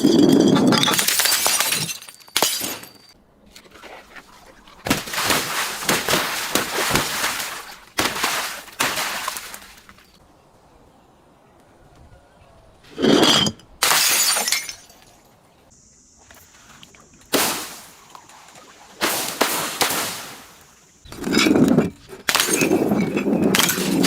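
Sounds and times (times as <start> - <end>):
glass breaking and crunching: 0.0 - 3.2, 13.4 - 15.1, 22.2 - 24.0.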